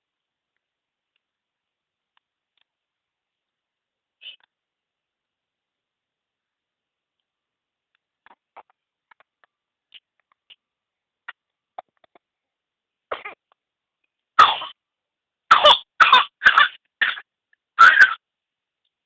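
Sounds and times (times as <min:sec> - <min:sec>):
person coughing: 0:17.8 - 0:18.2.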